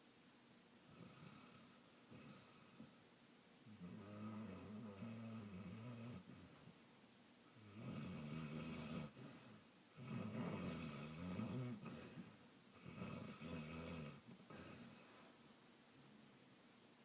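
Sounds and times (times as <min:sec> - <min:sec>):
dog snoring: 0:00.9 - 0:03.0, 0:03.7 - 0:06.7, 0:07.6 - 0:15.2.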